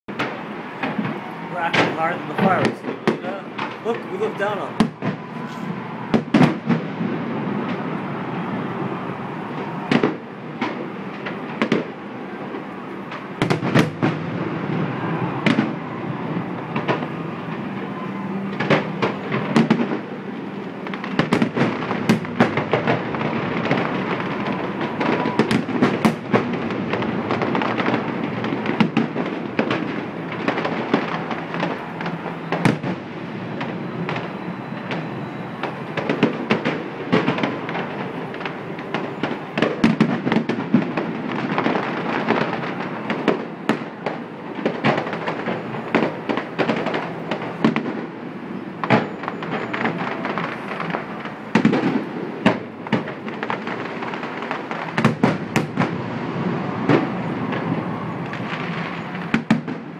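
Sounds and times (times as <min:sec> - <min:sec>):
fireworks bangs and cracks: 0:00.1 - 0:59.9.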